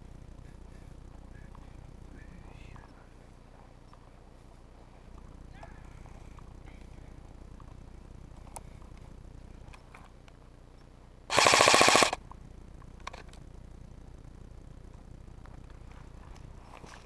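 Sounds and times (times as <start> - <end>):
airsoft gun full-auto burst: 11.3 - 12.2.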